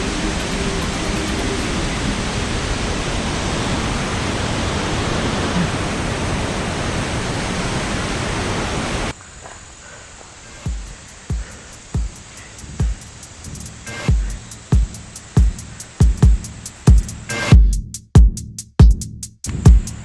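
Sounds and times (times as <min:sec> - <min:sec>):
waterfall roaring: 0:00.0 - 0:09.1.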